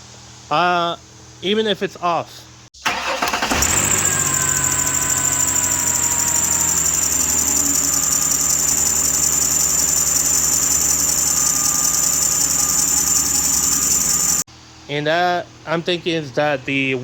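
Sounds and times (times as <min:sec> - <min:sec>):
high-pitched screech: 0:03.2 - 0:14.4
car engine running: 0:03.2 - 0:14.5.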